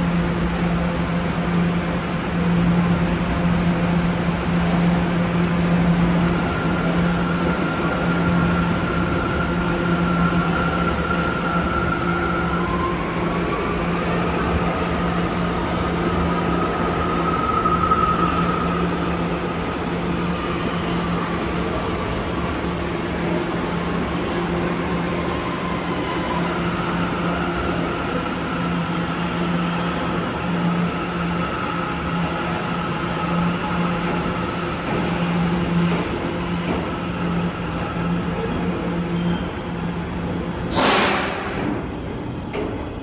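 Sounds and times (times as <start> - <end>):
subway train running: 0.0 - 43.0.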